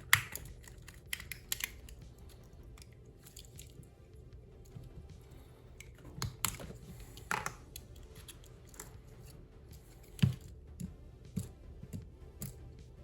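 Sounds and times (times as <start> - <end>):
pocket knife tools clicking: 0.0 - 3.8.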